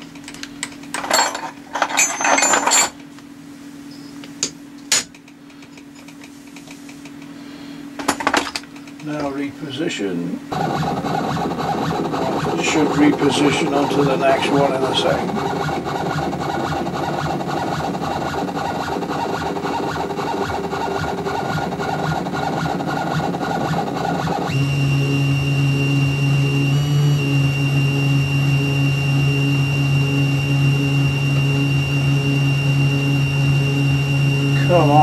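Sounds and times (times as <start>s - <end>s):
hum with high whine: 0.0s - 35.0s
machine tool motor drive: 10.5s - 24.7s.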